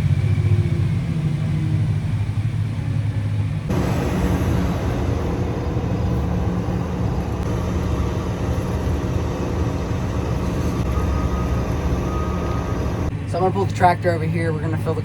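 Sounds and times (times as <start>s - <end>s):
heavy machinery engine droning: 3.7s - 13.6s.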